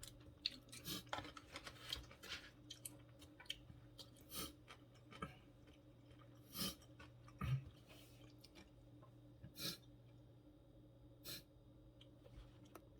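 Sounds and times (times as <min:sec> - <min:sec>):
chewing and mouth noises: 0:00.0 - 0:08.8.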